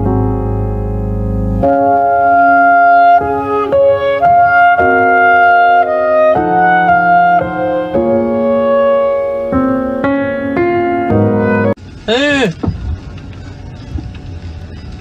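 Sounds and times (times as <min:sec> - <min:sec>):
keyboard chords: 0:00.0 - 0:11.8.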